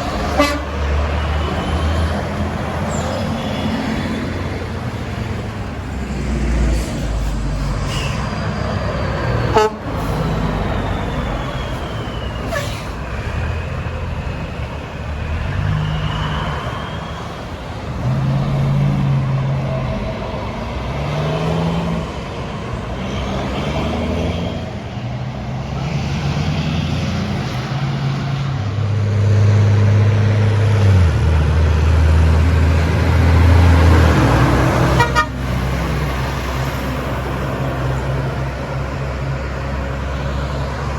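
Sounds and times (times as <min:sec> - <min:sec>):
heavy trucks passing: 0:00.0 - 0:40.9
truck horn blasts: 0:00.2 - 0:02.0, 0:09.5 - 0:10.3, 0:34.5 - 0:35.7.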